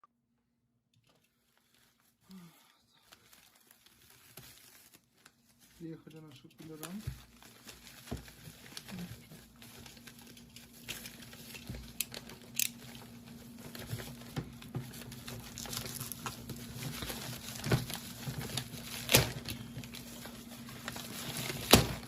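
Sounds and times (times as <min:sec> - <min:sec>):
packaging crinkling and tearing: 0:01.1 - 0:02.2, 0:02.8 - 0:22.0.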